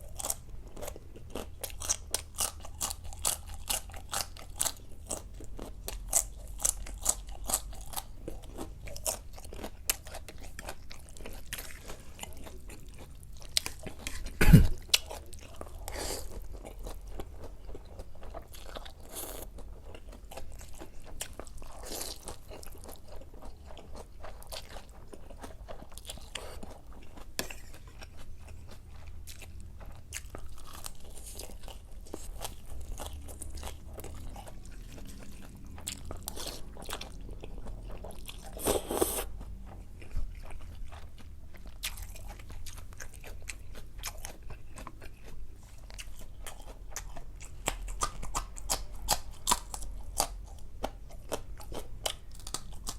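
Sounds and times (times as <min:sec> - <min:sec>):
person chewing and crunching food: 0:00.0 - 0:52.9
open mouth sounds: 0:14.1 - 0:15.0.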